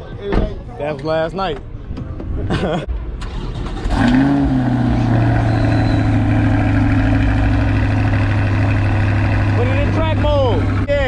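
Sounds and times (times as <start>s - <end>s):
car engine idling: 3.3s - 11.0s.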